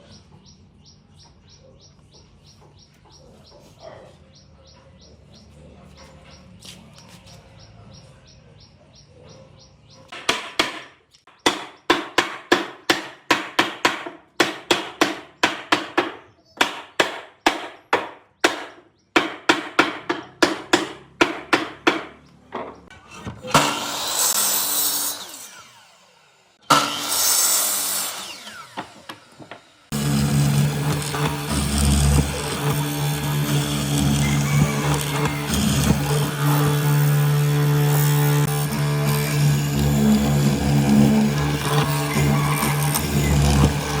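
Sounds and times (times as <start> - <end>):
power tool starting: 23.0 - 44.0.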